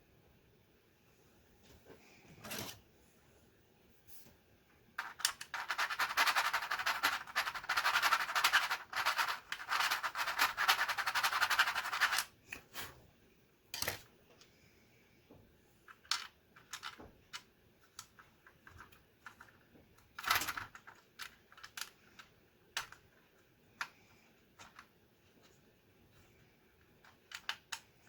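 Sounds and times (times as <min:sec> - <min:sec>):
plastic keyboard keys clicking: 0:05.0 - 0:12.3, 0:15.9 - 0:23.2, 0:26.9 - 0:27.9.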